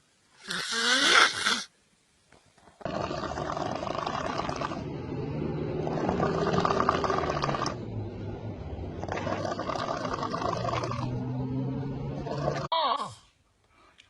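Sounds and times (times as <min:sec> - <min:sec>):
person snoring loudly: 0:00.4 - 0:01.7, 0:02.8 - 0:08.0, 0:08.8 - 0:13.1.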